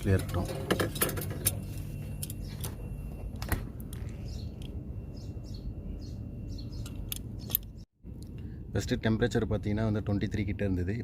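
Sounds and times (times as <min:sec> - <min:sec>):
bird chirping: 0:01.4 - 0:07.9.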